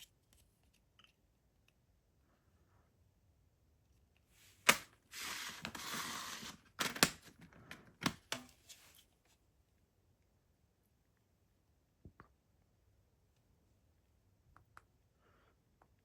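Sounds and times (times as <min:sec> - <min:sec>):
packaging rustling scrape: 0:04.4 - 0:07.3
plastic case clicks: 0:06.8 - 0:08.5.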